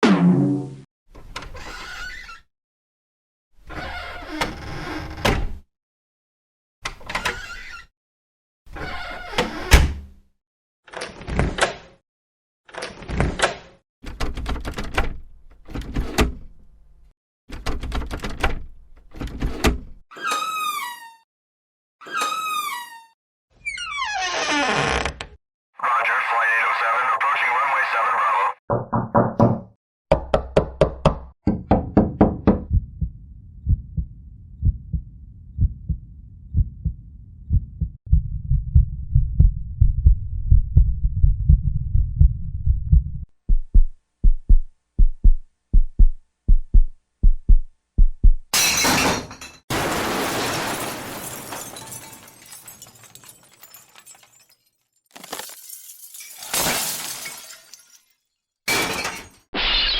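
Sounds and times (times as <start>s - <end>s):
heartbeat thumps: 32.0s - 48.5s
low hum: 32.7s - 48.4s
breaking crashes: 48.6s - 59.9s.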